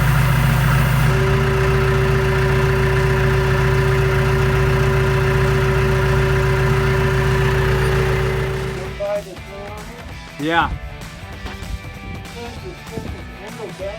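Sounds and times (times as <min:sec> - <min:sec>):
steady whine: 0:00.0 - 0:09.0
tractor engine running: 0:00.0 - 0:09.2.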